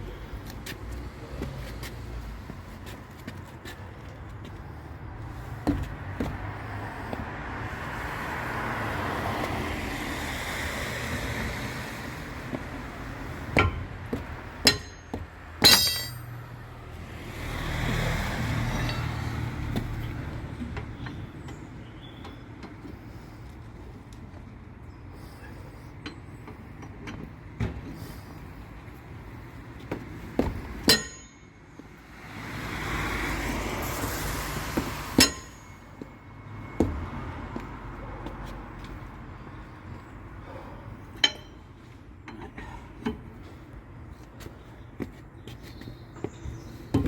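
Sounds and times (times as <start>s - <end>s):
vehicles passing by: 0.0s - 47.0s
wheel brace clinking on wheel nuts: 13.5s - 16.4s, 18.7s - 20.0s, 30.4s - 31.5s, 35.1s - 36.1s, 40.4s - 43.6s.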